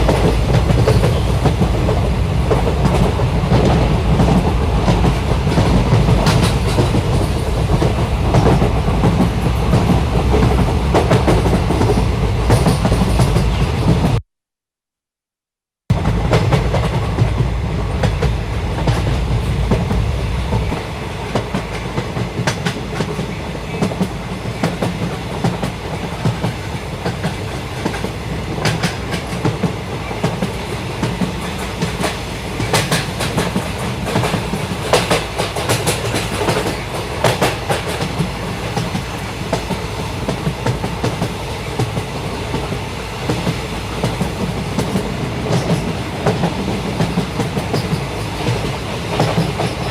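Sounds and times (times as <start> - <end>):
rail joint clacks: 0.0 - 14.2, 15.9 - 49.9
train wheels rumbling on rails: 0.0 - 14.2, 15.9 - 49.9.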